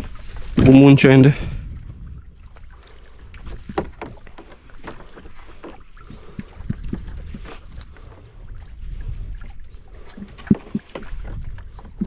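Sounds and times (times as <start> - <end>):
boat engine low rumble: 0.0 - 12.0
knocks against the hull: 3.3 - 5.8.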